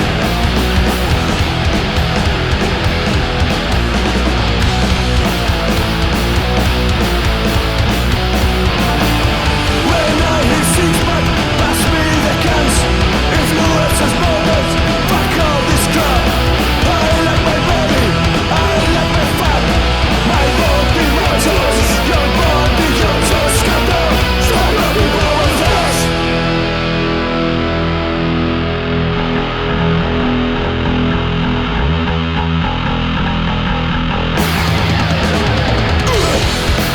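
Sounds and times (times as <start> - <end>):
drums and cymbals: 0.0 - 26.9, 34.4 - 36.9
bass guitar: 0.0 - 36.9
distorted electric guitars: 0.0 - 36.9.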